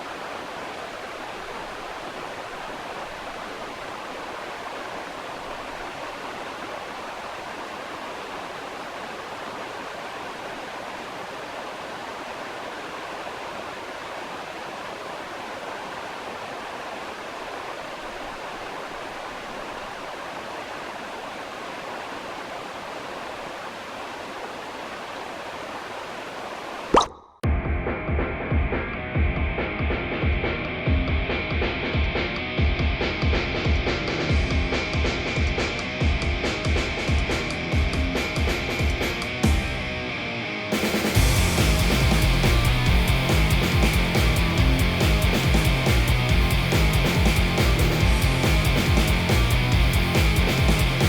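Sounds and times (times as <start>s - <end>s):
steady rushing noise: 40.8s - 51.0s.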